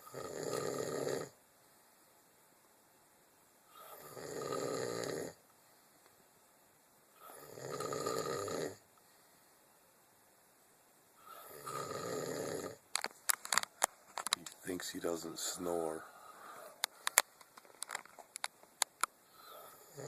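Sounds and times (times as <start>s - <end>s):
man snoring: 0.0s - 1.4s, 3.7s - 5.4s, 7.2s - 8.8s, 11.2s - 12.8s, 19.3s - 20.0s.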